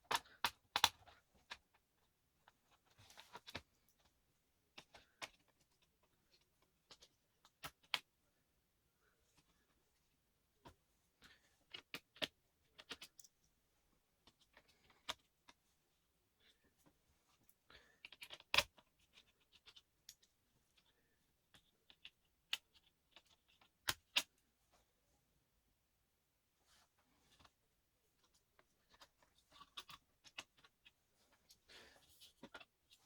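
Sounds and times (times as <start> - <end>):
tools clicking on laptop parts: 0.1 - 1.6.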